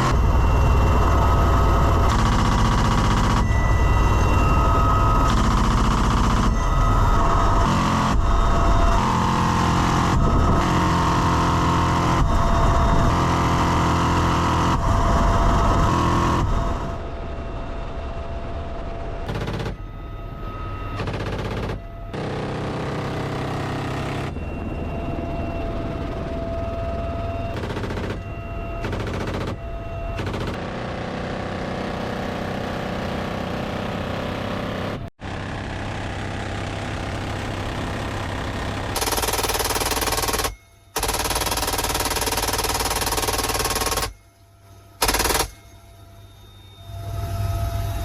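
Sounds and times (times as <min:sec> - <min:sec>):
minigun firing rattle: 0:19.3 - 0:19.8, 0:27.6 - 0:29.6, 0:30.2 - 0:30.7, 0:38.9 - 0:44.2, 0:45.0 - 0:45.8.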